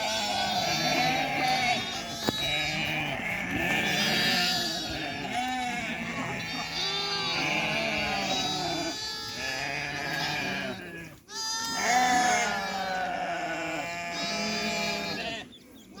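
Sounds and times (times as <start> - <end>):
sheep bleating: 0.0 - 16.0.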